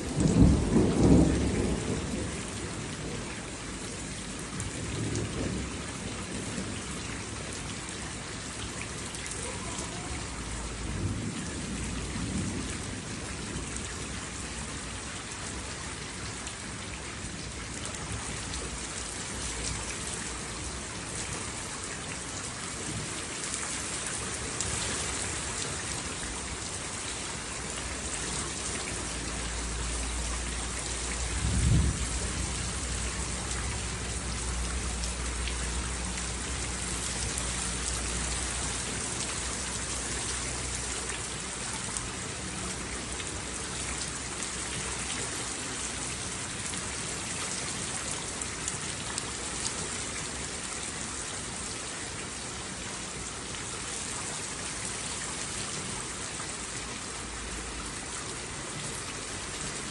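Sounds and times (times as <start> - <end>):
thunder rumbling: 0.0 - 6.9, 29.8 - 35.0
steady rain falling: 0.0 - 59.9.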